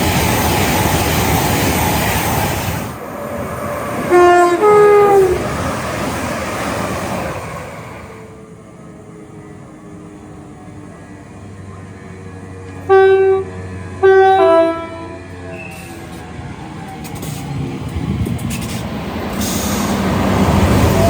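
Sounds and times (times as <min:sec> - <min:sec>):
train rumble: 0:00.0 - 0:21.0
train air horn blasts: 0:04.1 - 0:05.4, 0:12.8 - 0:16.0.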